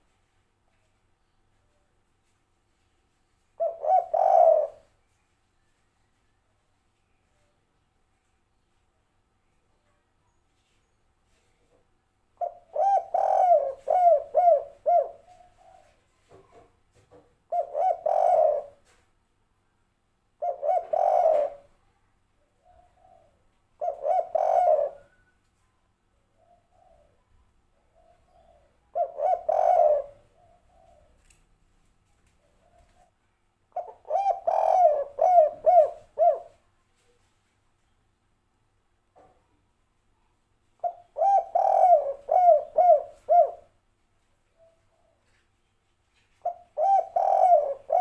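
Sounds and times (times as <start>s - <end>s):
dove cooing: 3.6s - 4.9s, 12.4s - 16.6s, 17.5s - 19.0s, 20.4s - 21.8s, 22.6s - 25.3s, 26.4s - 31.2s, 33.8s - 36.6s, 40.8s - 43.7s, 46.4s - 48.0s.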